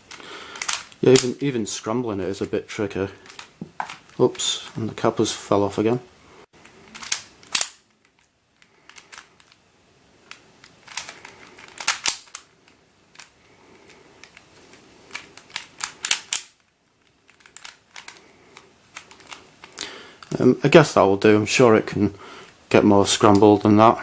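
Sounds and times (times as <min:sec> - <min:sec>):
puzzle cube clicking: 0:00.1 - 0:01.4, 0:06.6 - 0:09.6, 0:10.2 - 0:19.9.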